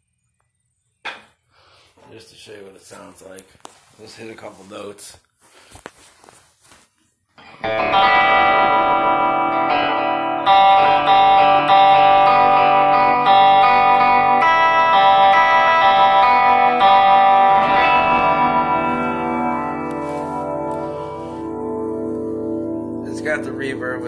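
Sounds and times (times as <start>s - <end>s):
electric guitar chords ringing: 7.4s - 24.0s.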